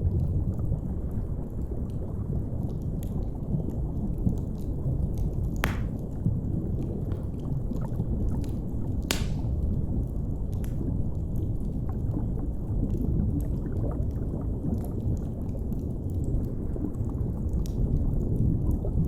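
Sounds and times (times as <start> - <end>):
wood fire crackling: 4.5 - 6.3, 8.4 - 10.8.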